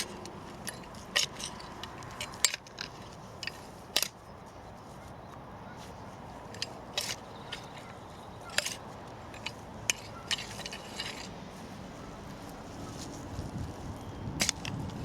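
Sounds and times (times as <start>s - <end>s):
potatoes and stones clicking: 0.0s - 4.3s, 6.4s - 11.4s, 12.4s - 15.0s
faint scraping in soil: 0.0s - 15.0s.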